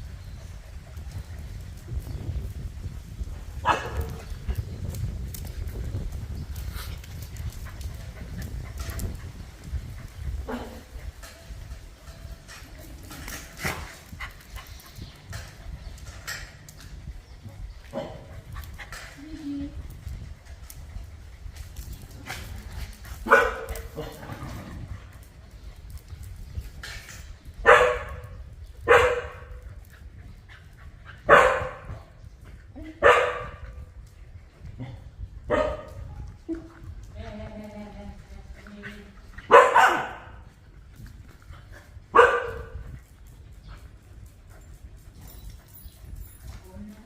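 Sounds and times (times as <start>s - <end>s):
dogs scuffing and pattering: 0.0s - 47.0s
dog barking: 3.6s - 4.0s, 23.3s - 23.7s, 27.7s - 28.2s, 28.9s - 29.4s, 31.3s - 31.9s, 33.0s - 33.6s, 35.5s - 35.9s, 39.5s - 40.4s, 42.2s - 42.8s.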